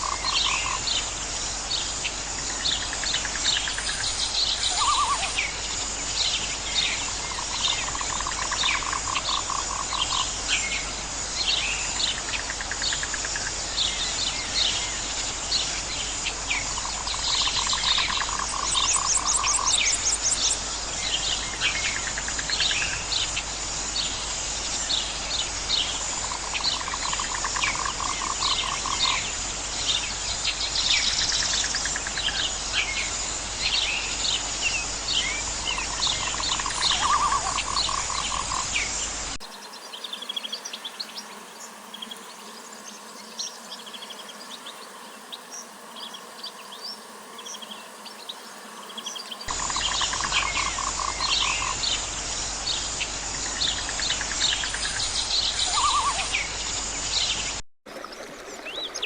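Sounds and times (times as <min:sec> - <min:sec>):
high insect drone: 0:00.0 - 0:57.6
bird chirps: 0:03.6 - 0:05.6, 0:53.7 - 0:56.6.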